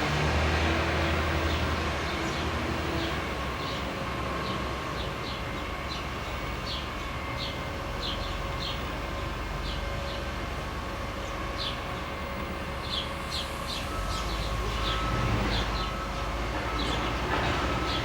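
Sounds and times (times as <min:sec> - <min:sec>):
train rumbling past: 0:00.0 - 0:18.0
birds chirping: 0:01.0 - 0:10.4, 0:11.0 - 0:18.0.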